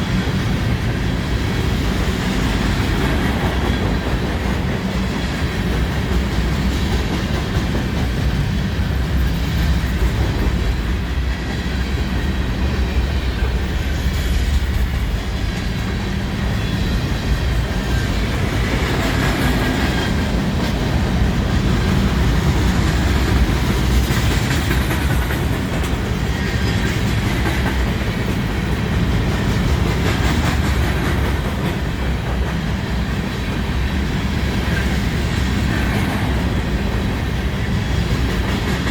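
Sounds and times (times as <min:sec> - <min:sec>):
freight train rumble: 0:00.0 - 0:38.9
wheels clacking over rail joints: 0:17.6 - 0:32.8.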